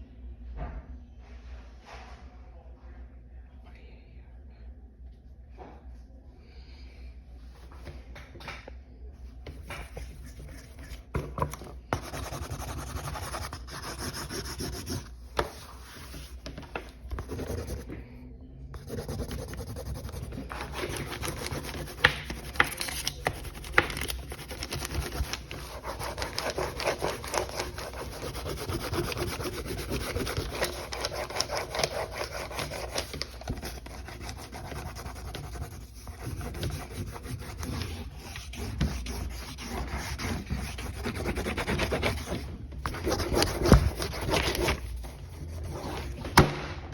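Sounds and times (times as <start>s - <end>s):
coloring tool rubbing on a sign: 12.0s - 15.1s, 18.8s - 44.8s.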